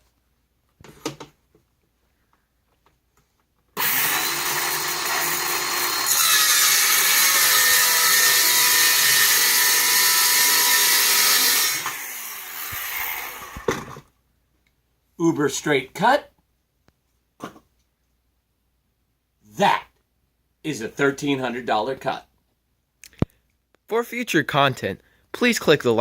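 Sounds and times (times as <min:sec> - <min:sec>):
circular saw cutting wood: 0:03.8 - 0:14.0.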